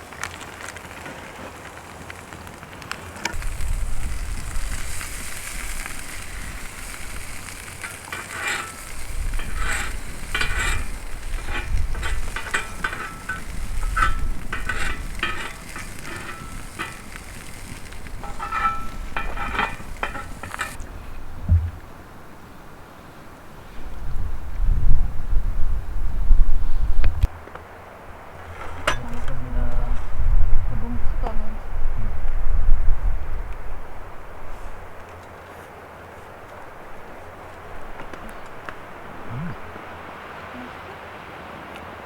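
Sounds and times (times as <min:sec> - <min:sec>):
food sizzling: 0:00.0 - 0:22.3
metal scraping and clicking: 0:03.2 - 0:20.9
wind rumble on microphone: 0:03.3 - 0:22.8, 0:23.4 - 0:27.3, 0:28.4 - 0:35.0, 0:36.7 - 0:39.8.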